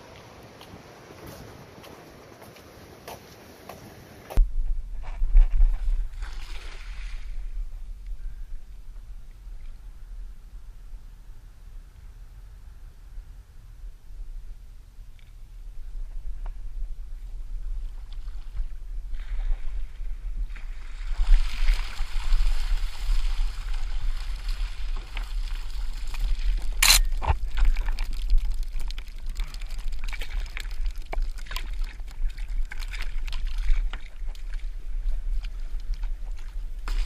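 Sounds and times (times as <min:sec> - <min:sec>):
wind rumbling on microphone: 0:00.0 - 0:37.0
water sloshing and splashing: 0:17.9 - 0:37.0.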